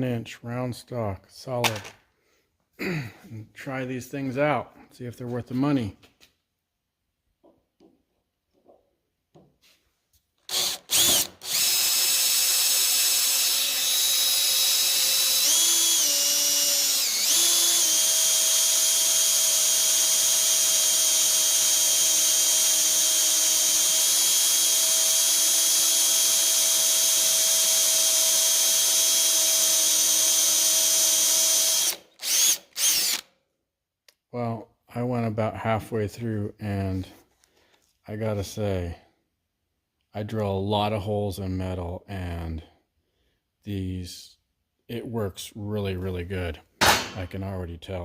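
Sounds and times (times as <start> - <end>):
power drill boring into metal: 10.5 - 33.3.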